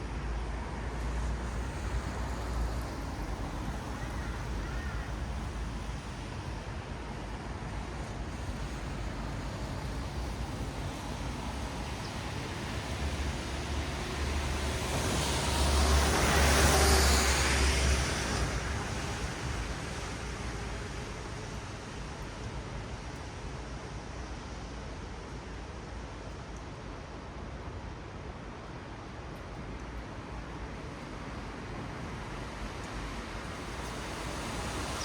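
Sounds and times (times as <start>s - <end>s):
tyres hissing on wet road: 0.1s - 25.8s, 30.1s - 35.0s.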